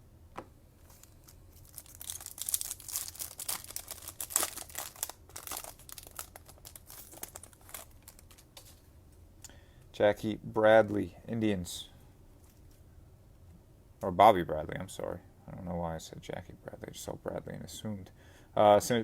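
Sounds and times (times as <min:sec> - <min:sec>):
foil wrapper tearing and crinkling: 0:00.9 - 0:08.6.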